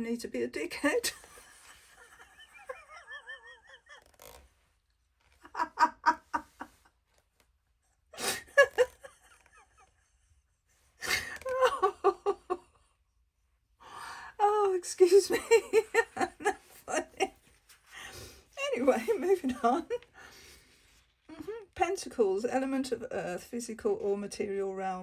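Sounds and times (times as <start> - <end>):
woman laughing: 1.0 - 4.2, 5.4 - 6.9, 8.2 - 10.3, 11.0 - 12.9, 14.4 - 17.5.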